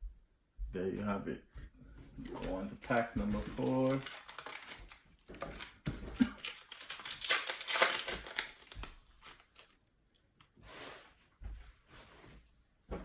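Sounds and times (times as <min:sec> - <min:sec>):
wrapper crinkling as torn: 0:02.2 - 0:09.9.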